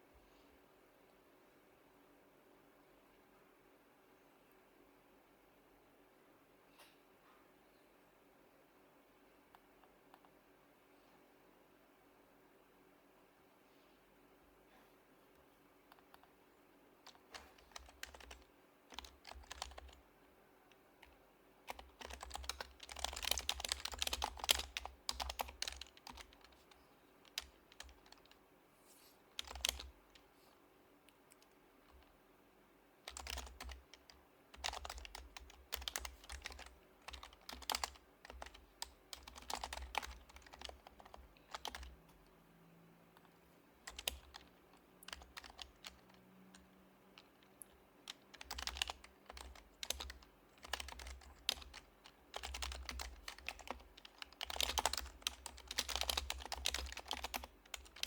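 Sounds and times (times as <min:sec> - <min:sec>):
soft muted keyboard typing: 0:09.5 - 0:10.4, 0:15.4 - 0:16.4, 0:17.0 - 0:32.2, 0:33.0 - 0:58.0.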